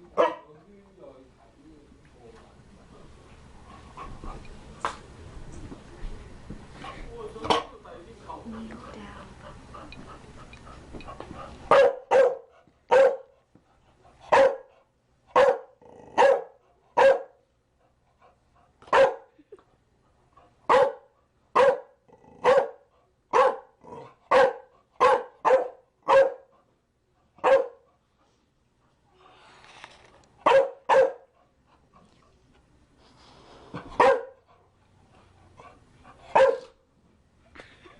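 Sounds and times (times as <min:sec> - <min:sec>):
dog barking: 0:00.2 - 0:00.5, 0:11.7 - 0:13.3, 0:14.3 - 0:14.7, 0:15.3 - 0:17.4, 0:18.9 - 0:19.3, 0:20.7 - 0:26.5, 0:27.4 - 0:27.9, 0:30.4 - 0:31.3, 0:34.0 - 0:34.4, 0:36.3 - 0:36.8.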